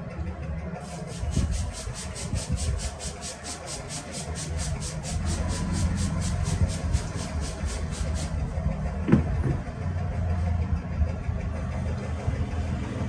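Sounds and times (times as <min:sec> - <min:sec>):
low steady rumble: 0:00.0 - 0:13.0
rhythmic massage strokes: 0:00.8 - 0:08.6.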